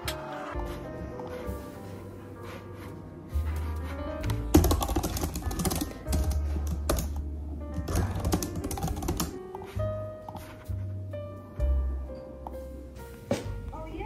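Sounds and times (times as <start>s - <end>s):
rapid irregular clicks and taps: 4.5s - 9.7s.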